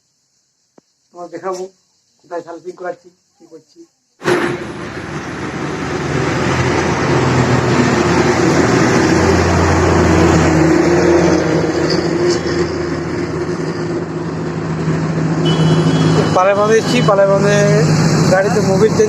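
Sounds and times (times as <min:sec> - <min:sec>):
loud rushing noise: 0:04.2 - 0:19.0
motorcycle engine running: 0:12.1 - 0:19.0.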